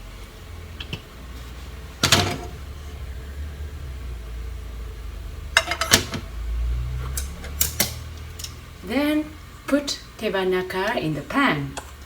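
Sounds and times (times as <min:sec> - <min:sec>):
steady low hum: 0:00.0 - 0:12.0
cookware clattering: 0:02.0 - 0:02.6, 0:05.6 - 0:06.2
cookware clicks and knocks: 0:02.0 - 0:02.6, 0:05.6 - 0:06.2.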